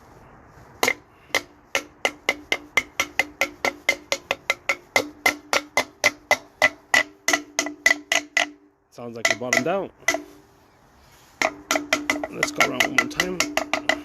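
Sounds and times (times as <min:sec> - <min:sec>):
hammer tapping metal tool: 0:00.8 - 0:10.4, 0:11.4 - 0:14.0.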